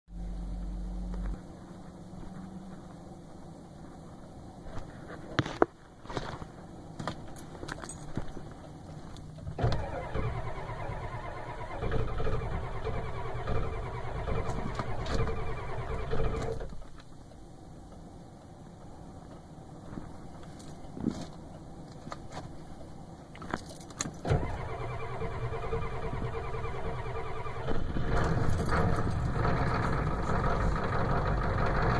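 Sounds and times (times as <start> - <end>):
diesel engine cranking: 8.7 - 16.9, 24.0 - 31.9
starter clicks: 9.6 - 16.8.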